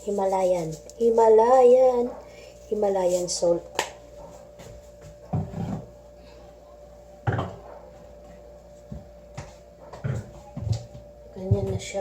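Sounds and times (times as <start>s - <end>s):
faint steady hum: 0.0s - 12.0s
kitchen items knocking on counter: 7.2s - 7.6s.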